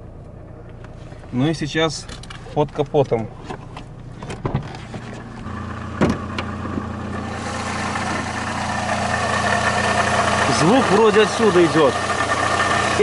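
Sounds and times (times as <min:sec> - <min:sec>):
car engine idling: 0:00.0 - 0:13.0
bearing humming: 0:03.2 - 0:13.0.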